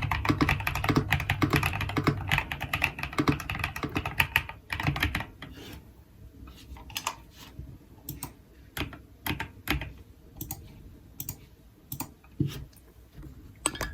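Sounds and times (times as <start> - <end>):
mechanical keyboard keystrokes: 0.0 - 5.4.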